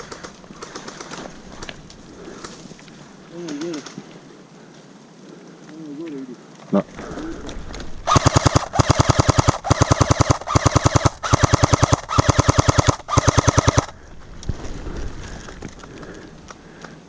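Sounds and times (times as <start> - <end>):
airsoft rifle automatic bursts: 0.0 - 1.2, 8.0 - 14.0.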